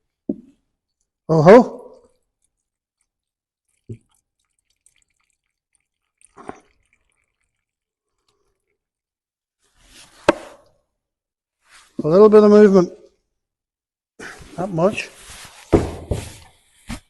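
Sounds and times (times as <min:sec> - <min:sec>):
oil dripping: 0:02.0 - 0:10.0.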